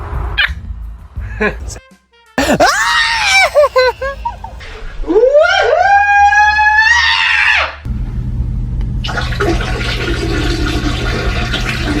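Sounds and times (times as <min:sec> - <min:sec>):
person shrieking: 0:02.4 - 0:04.2.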